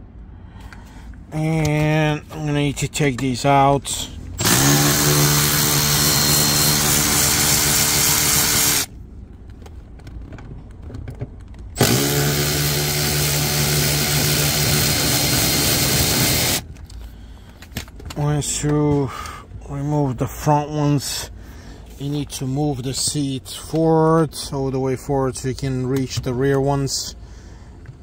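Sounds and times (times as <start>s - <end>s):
power tool motor whirring: 4.4s - 8.9s, 11.8s - 16.6s.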